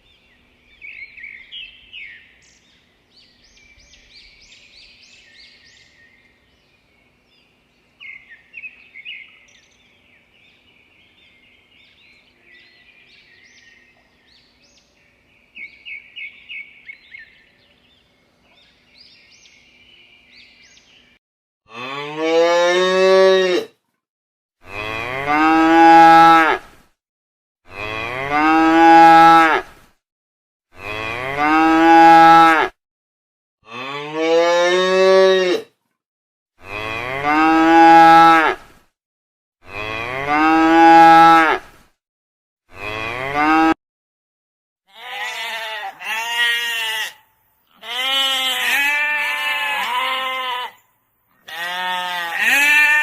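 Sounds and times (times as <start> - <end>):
cow mooing: 21.7 - 23.7, 24.6 - 26.7, 27.7 - 29.7, 30.8 - 32.8, 33.6 - 35.6, 36.6 - 38.6, 39.6 - 41.7, 42.7 - 43.8, 51.5 - 53.0
sheep bleating: 44.9 - 50.8, 51.4 - 53.0.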